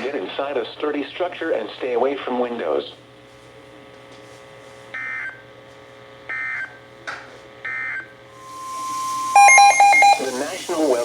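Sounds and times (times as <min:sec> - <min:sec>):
faint radio hiss: 0:08.4 - 0:11.0
warbling digital data bursts: 0:08.4 - 0:11.0.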